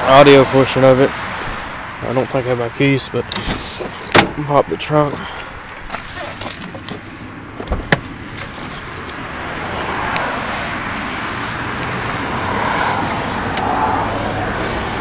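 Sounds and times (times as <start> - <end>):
trunk latch clack: 3.3 - 4.4, 5.9 - 8.8.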